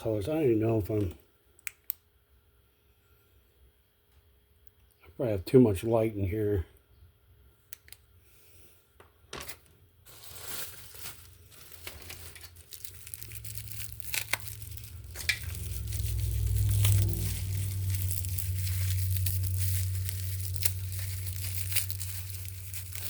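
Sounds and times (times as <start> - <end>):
packing wrap crinkling and tearing: 10.1 - 23.0
low rumble: 11.6 - 23.0.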